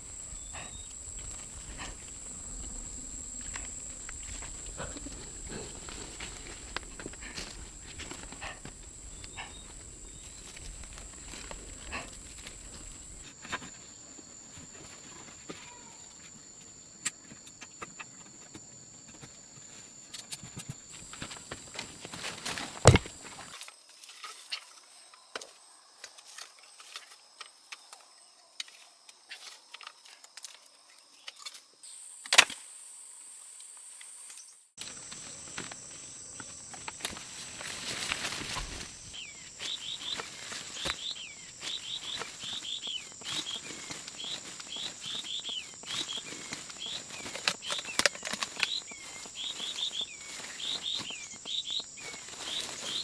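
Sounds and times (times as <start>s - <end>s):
high insect drone: 0.0s - 18.8s, 31.9s - 53.0s.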